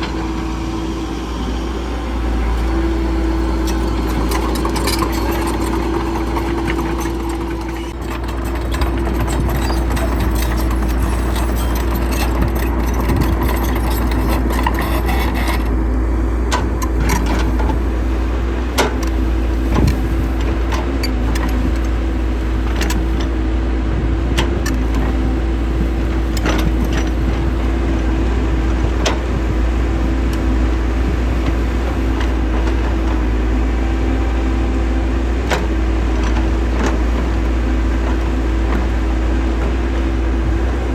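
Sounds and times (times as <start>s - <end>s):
diesel engine rumbling: 0.0s - 40.9s
metallic clanks and knocks: 3.4s - 15.6s.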